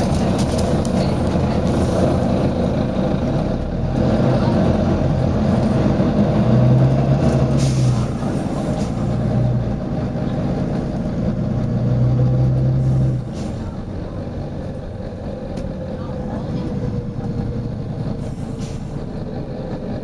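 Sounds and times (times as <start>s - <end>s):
bus diesel engine droning: 0.0s - 20.0s
pneumatic air hisses: 18.2s - 19.0s.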